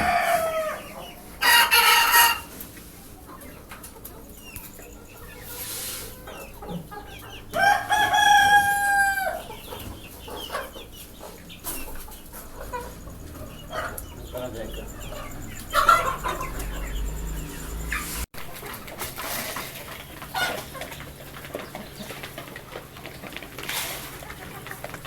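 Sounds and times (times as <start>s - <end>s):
rooster crowing: 0.0s - 2.5s, 7.5s - 9.5s, 13.2s - 18.2s
hens clucking: 0.0s - 25.0s.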